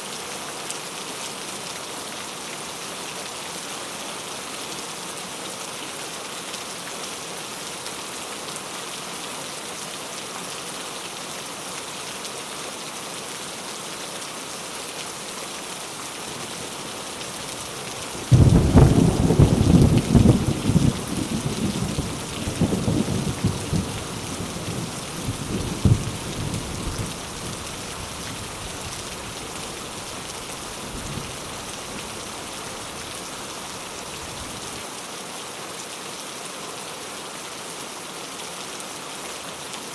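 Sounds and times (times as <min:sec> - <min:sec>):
steady rain falling: 0:00.0 - 0:39.9
thunderclap rumbling: 0:18.2 - 0:27.2.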